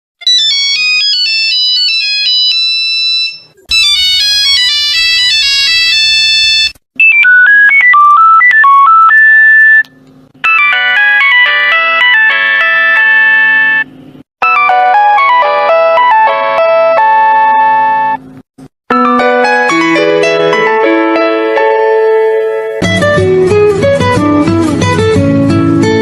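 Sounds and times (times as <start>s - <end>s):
mobile phone ringtones: 1.5s - 9.8s, 10.4s - 18.2s.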